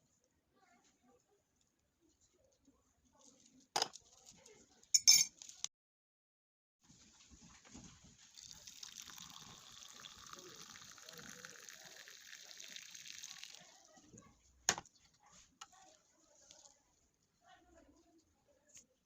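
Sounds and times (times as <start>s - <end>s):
liquid pouring: 8.3s - 14.1s.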